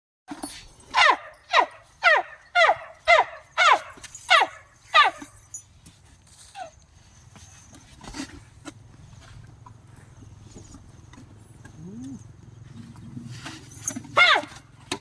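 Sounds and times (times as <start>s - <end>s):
animal yelping cries: 1.0s - 5.3s, 14.2s - 14.6s.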